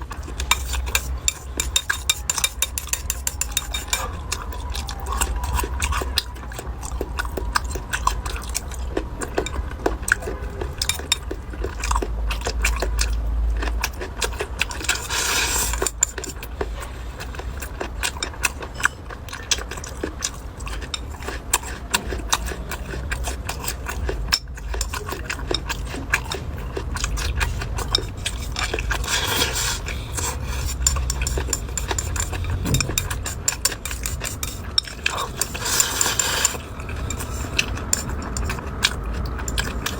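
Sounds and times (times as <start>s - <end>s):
chewing and biting clicks: 0.0s - 39.9s
utensils clinking on dishes: 0.0s - 39.9s
steady low rumble: 2.4s - 39.9s.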